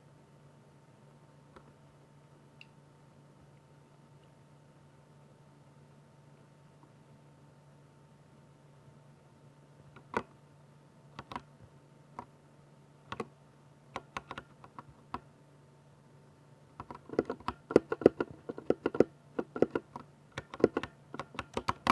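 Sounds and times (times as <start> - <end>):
mechanical keyboard typing: 11.2 - 11.5, 13.1 - 13.3, 14.0 - 15.2, 16.8 - 21.9.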